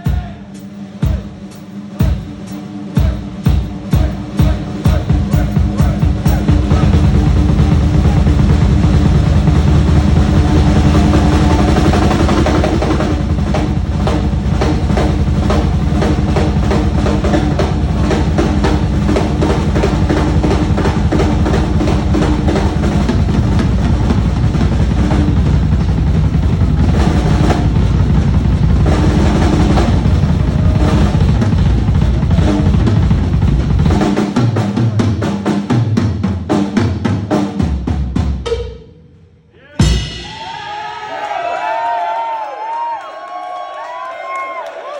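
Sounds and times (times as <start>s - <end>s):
bass drum and snare strokes: 0.0s - 38.9s.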